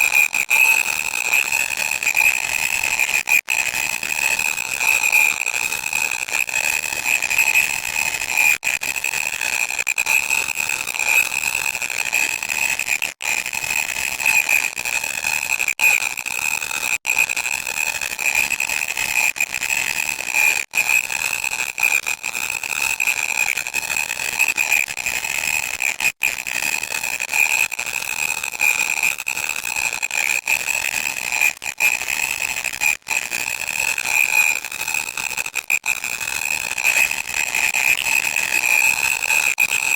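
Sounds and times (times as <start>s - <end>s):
electronic static buzzing: 34.0s - 39.9s.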